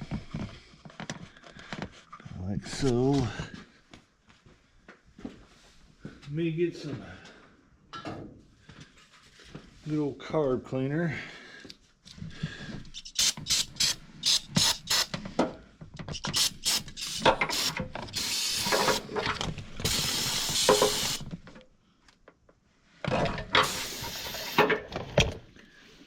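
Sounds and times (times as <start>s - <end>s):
aerosol can rattling: 12.9s - 15.1s, 16.1s - 21.3s, 23.6s - 24.8s
aerosol spray hissing: 13.0s - 15.1s, 16.2s - 19.2s, 19.8s - 21.3s, 23.6s - 24.7s.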